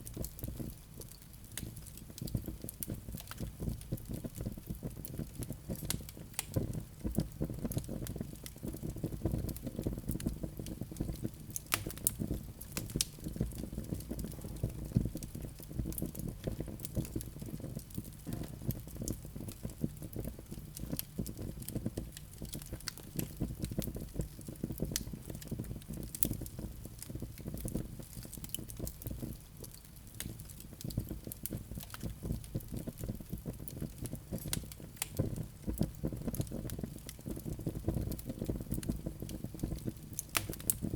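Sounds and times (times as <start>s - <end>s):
wood fire crackling and popping: 0.0s - 40.9s.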